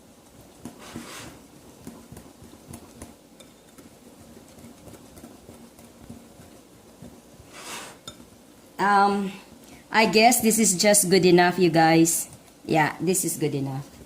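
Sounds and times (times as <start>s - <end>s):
batter swishing: 0.0s - 14.0s
utensil scraping and tapping bowl: 0.4s - 8.4s.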